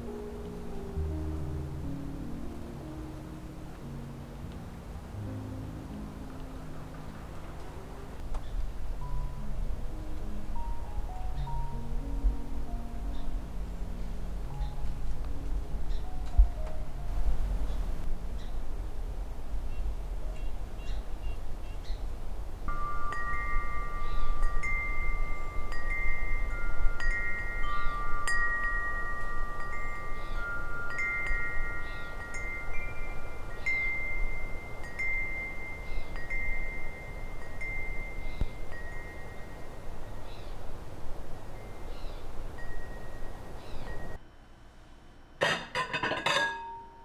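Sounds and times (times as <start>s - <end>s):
low wind rumble: 0.0s - 44.2s
wind chimes ringing: 22.5s - 44.2s, 45.8s - 47.0s.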